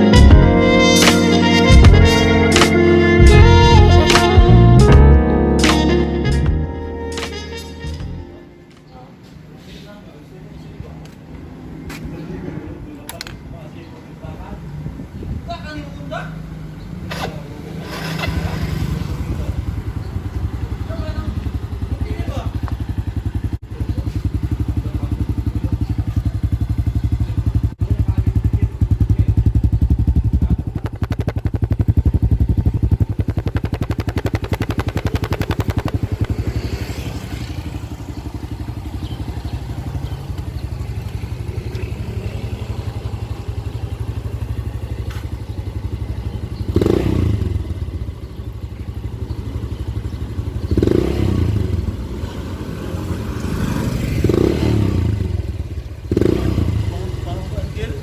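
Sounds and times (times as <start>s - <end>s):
motorcycle engine popping exhaust: 18.2s - 53.4s, 54.0s - 58.0s.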